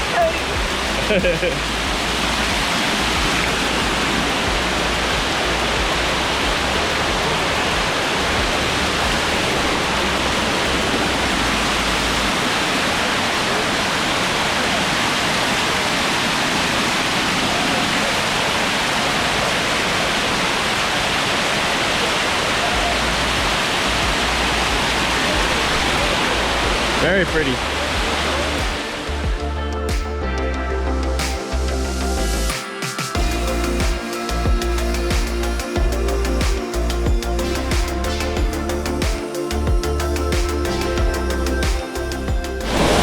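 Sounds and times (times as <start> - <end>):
waterfall roaring: 0.0 - 29.3, 42.6 - 43.0.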